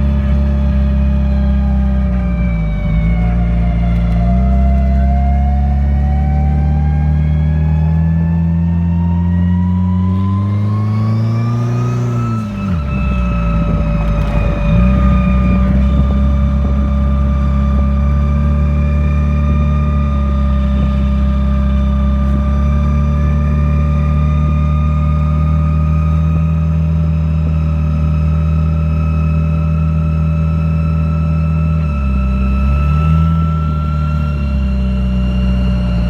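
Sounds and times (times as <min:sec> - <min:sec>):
high rising whine: 0:00.0 - 0:22.5, 0:29.8 - 0:36.0
car engine running: 0:00.0 - 0:36.0.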